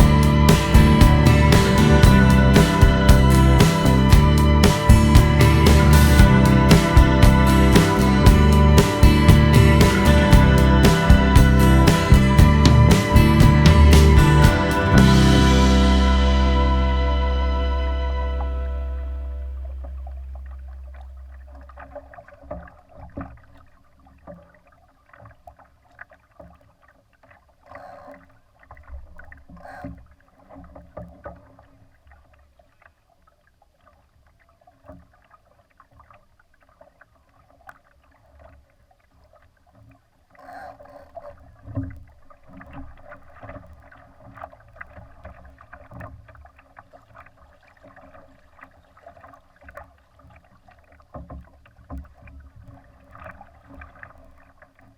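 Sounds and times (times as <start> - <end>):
low rumble: 0.0 - 21.8
water splashing against hull: 0.0 - 54.9.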